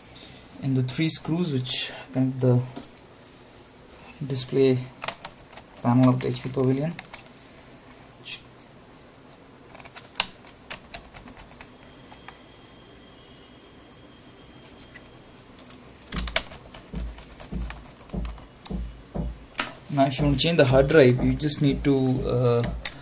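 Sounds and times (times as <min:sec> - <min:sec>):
low knocks: 0:16.9 - 0:19.5, 0:20.2 - 0:21.9.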